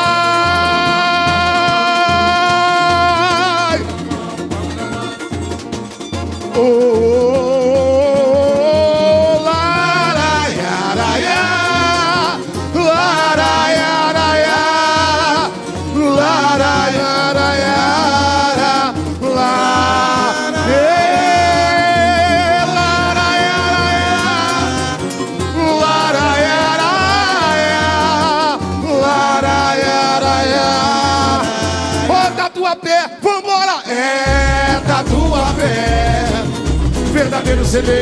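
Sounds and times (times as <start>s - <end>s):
person singing wordless long notes: 0.0s - 5.2s, 6.5s - 38.0s
samba drums: 0.0s - 32.5s, 34.3s - 38.0s.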